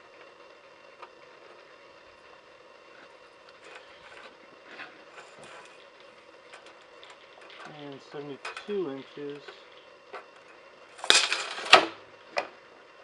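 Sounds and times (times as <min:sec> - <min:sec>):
steady background hum: 0:00.0 - 0:13.0
small handling clicks and knocks: 0:03.5 - 0:12.5.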